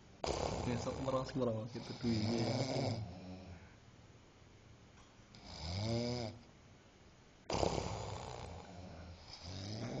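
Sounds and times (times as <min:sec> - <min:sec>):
loud snoring: 0:00.2 - 0:03.6, 0:05.4 - 0:06.4, 0:07.5 - 0:10.0.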